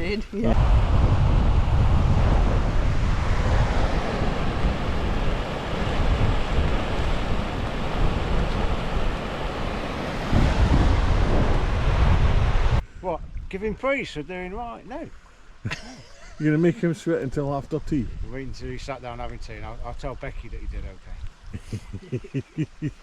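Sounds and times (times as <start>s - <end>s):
strong wind buffeting microphone: 0.0s - 14.0s, 17.3s - 20.9s.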